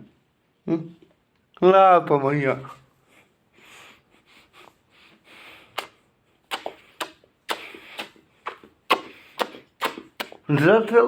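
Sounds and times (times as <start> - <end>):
soft breathing: 3.0 - 6.1
kissing smacks: 5.6 - 11.0.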